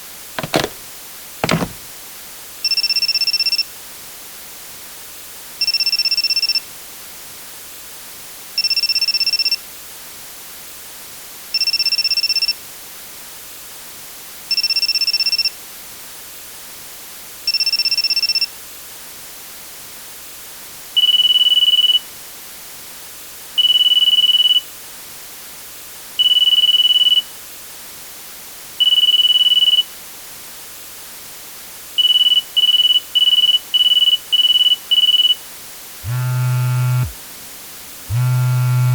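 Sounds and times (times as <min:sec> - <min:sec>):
electronic telephone beeping: 0:00.4 - 0:00.8, 0:01.4 - 0:01.8, 0:36.1 - 0:37.2, 0:38.1 - 0:38.9.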